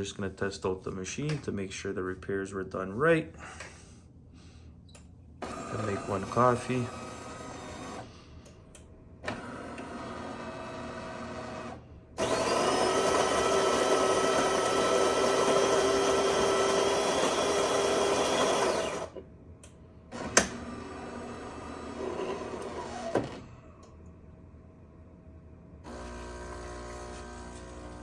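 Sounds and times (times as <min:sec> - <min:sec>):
coffee grinder motor running: 0:05.4 - 0:08.0, 0:09.4 - 0:19.2, 0:25.9 - 0:28.0
coffee machine whir: 0:05.4 - 0:08.1, 0:09.2 - 0:19.3, 0:20.1 - 0:23.8, 0:25.8 - 0:28.0.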